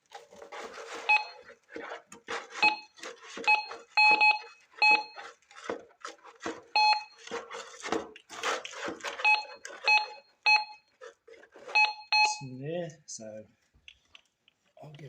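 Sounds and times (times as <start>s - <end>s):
scraping noises: 0.0s - 12.0s
metal detector short beeps: 1.1s - 1.4s, 3.5s - 5.2s, 6.8s - 7.2s, 9.2s - 10.8s, 11.8s - 12.5s.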